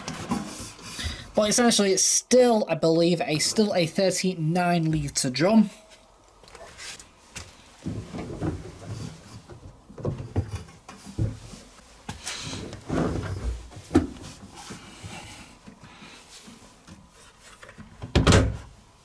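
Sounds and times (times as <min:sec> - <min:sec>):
washing machine clunks and rattles: 0:18.0 - 0:18.7.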